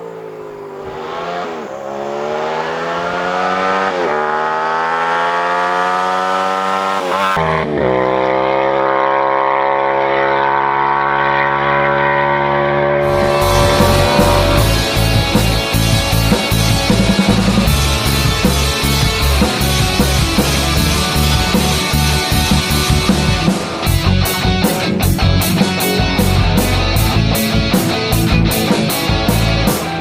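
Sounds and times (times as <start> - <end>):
motorcycle engine accelerating: 0.0 - 30.0
rock music: 13.0 - 30.0.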